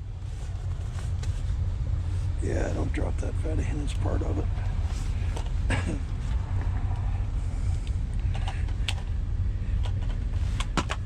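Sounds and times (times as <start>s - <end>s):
low rumble: 0.0s - 11.0s.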